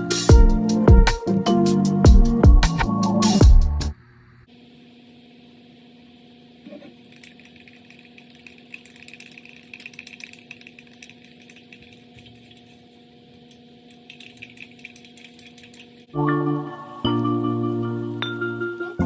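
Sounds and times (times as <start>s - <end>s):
low electrical hum: 3.9s - 18.7s
spray paint can hissing: 7.0s - 16.2s.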